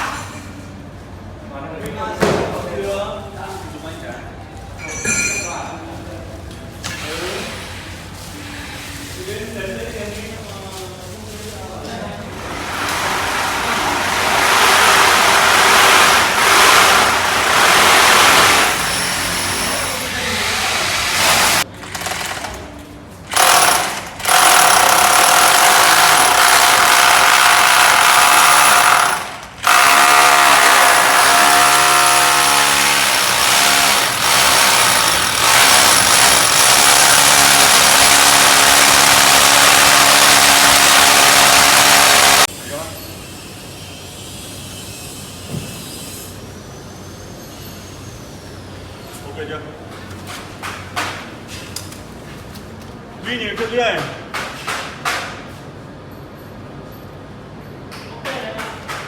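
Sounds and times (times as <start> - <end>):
hammer drill whining: 23.3 - 42.5.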